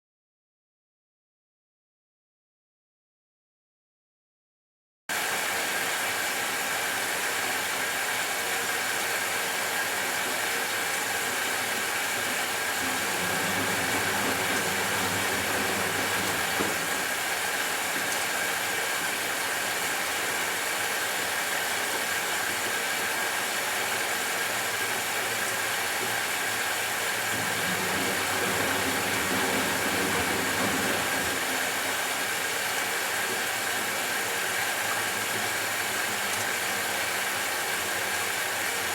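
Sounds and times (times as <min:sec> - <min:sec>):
washing machine humming: 0:09.2 - 0:38.8.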